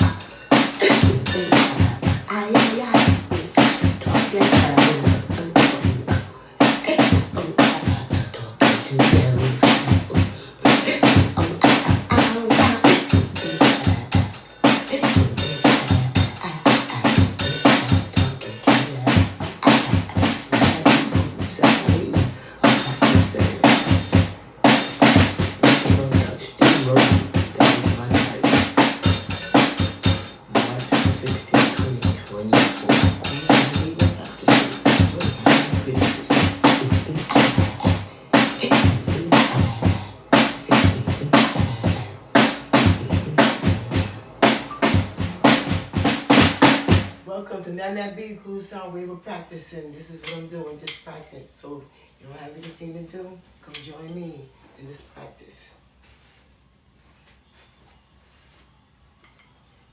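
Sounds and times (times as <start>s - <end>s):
drum beat: 0.0s - 47.3s.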